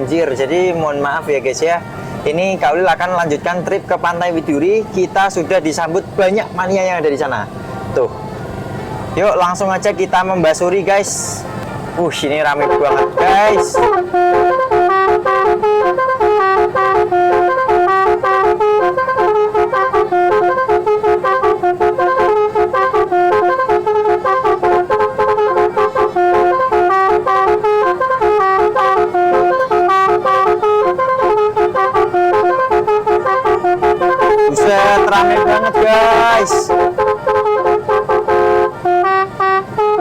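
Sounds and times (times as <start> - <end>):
multi-trumpet horn melody: 9.0 - 40.0.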